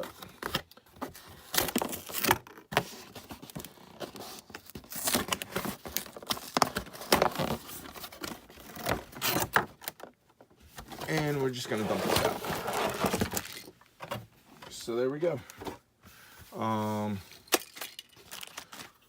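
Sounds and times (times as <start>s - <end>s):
cardboard packaging crinkling and tearing: 0.0s - 9.9s, 10.8s - 13.8s.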